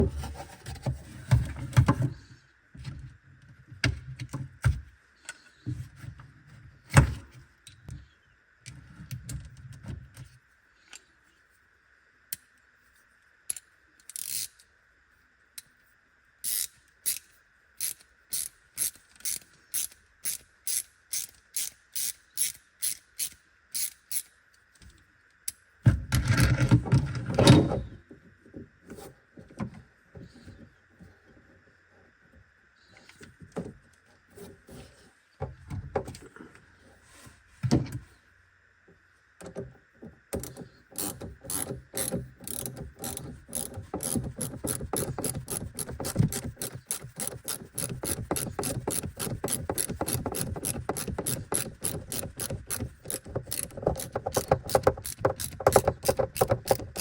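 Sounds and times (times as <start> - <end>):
ratchet-like clicks: 13.5 - 14.7, 16.4 - 24.4, 40.4 - 57.0
handling and knocking noises: 39.4 - 57.0.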